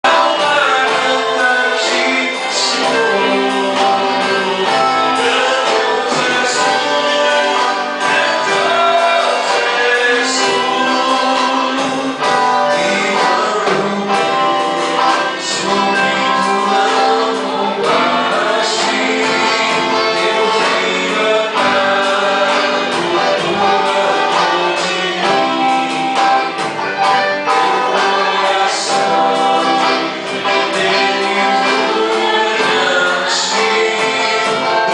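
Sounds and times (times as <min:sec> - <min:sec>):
church band playing: 0:00.0 - 0:34.9
voices singing: 0:00.0 - 0:34.9.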